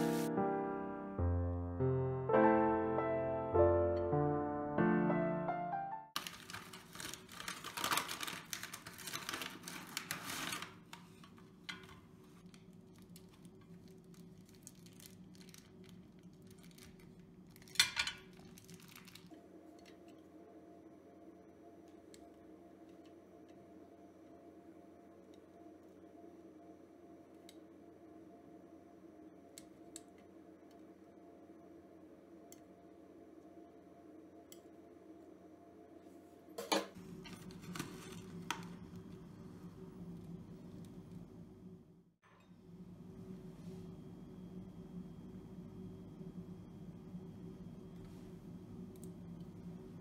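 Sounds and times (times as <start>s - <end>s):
low steady hum: 0.0s - 50.0s
click: 27.4s - 27.6s, 29.6s - 30.8s, 32.5s - 32.7s, 34.5s - 34.7s, 48.9s - 49.2s.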